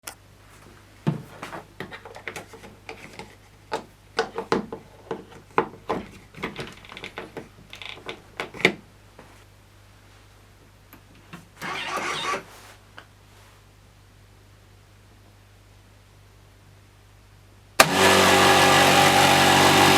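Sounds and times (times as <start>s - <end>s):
plastic clicks and knocks: 1.1s - 8.8s.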